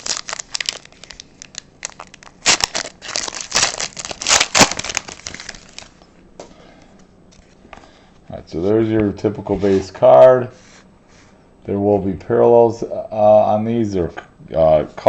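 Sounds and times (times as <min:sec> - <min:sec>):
wrapper tearing and crinkling: 0:00.0 - 0:06.0.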